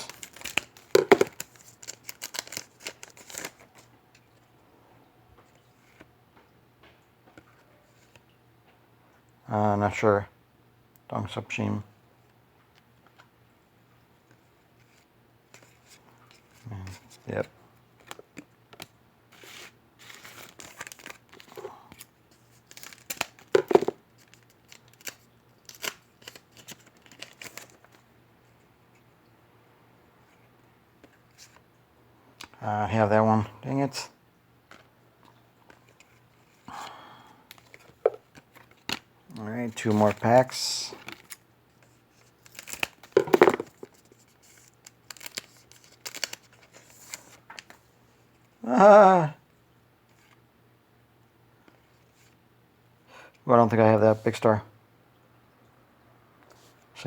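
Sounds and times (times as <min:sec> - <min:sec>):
cards shuffling and flicking: 0:00.0 - 0:03.8, 0:22.7 - 0:24.0, 0:42.5 - 0:47.8
wrapper crinkling and tearing: 0:00.0 - 0:03.9, 0:18.0 - 0:28.0, 0:39.7 - 0:47.8.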